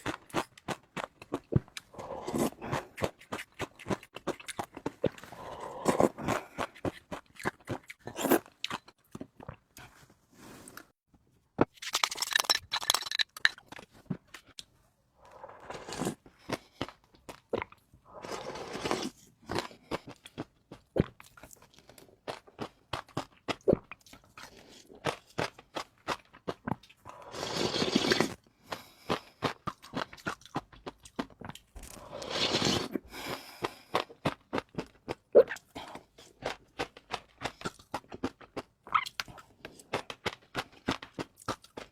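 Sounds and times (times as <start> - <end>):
wet chewing with crunches: 0.0 - 9.9, 15.3 - 41.9.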